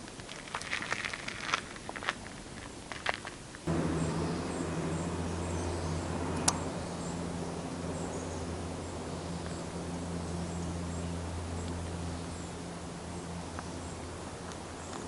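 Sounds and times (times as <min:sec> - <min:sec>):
steady low hum: 0:03.6 - 0:15.0.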